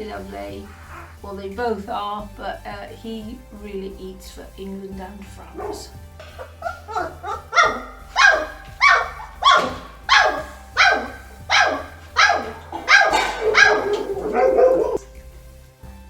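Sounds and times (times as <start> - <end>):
puppy barking: 5.5 - 15.0.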